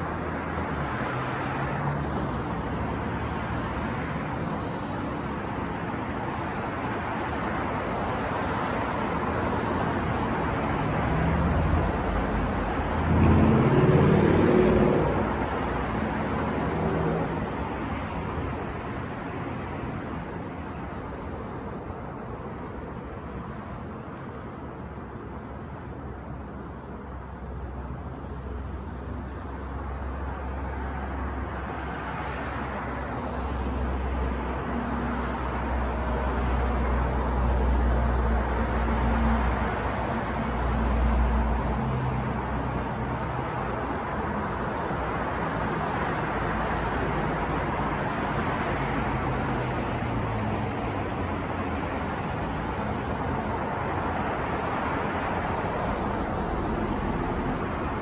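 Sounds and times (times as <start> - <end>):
street traffic rumble: 0.0 - 58.0
vehicle engine passing by: 11.0 - 17.5.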